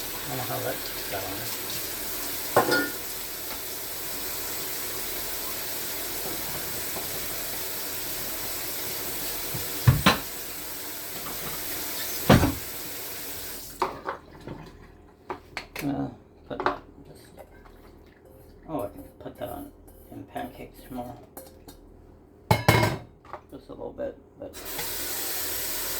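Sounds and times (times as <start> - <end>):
faucet running into sink: 0.0 - 14.6, 24.6 - 25.9.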